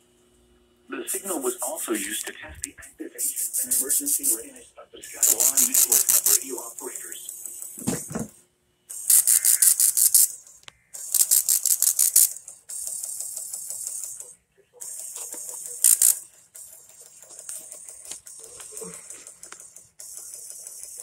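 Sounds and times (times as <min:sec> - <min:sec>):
radio static crackling: 0:00.9 - 0:08.3, 0:09.0 - 0:11.4.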